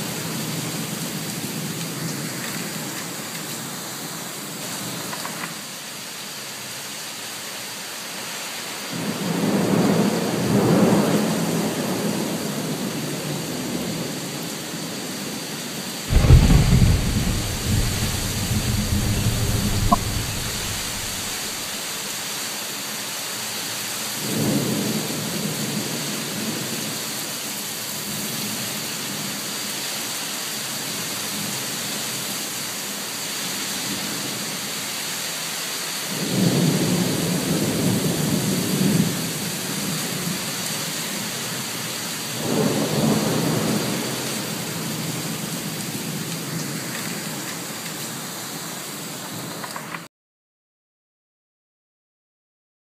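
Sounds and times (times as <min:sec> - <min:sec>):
steady rain: 0:00.0 - 0:50.1
thunder rolling: 0:16.1 - 0:21.7.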